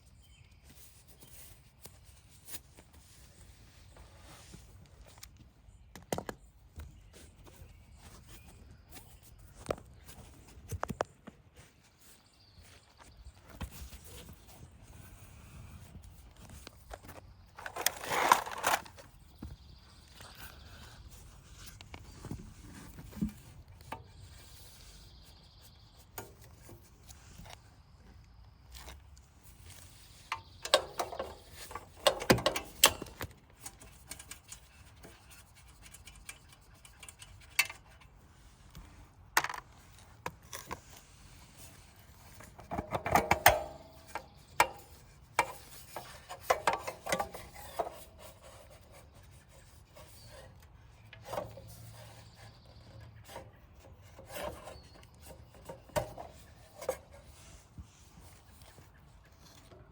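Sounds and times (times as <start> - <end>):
hand tools clicking and clinking: 30.3 - 35.0.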